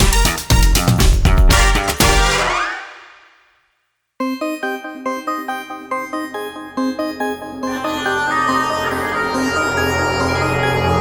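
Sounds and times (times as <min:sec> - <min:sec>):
electronic music with synth tones: 0:04.2 - 0:11.0.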